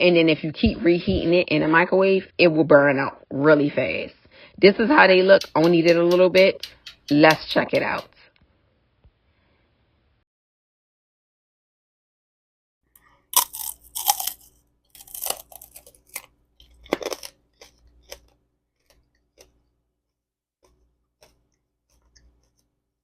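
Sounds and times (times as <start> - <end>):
hard candy crunching: 13.0 - 19.7, 20.6 - 22.8.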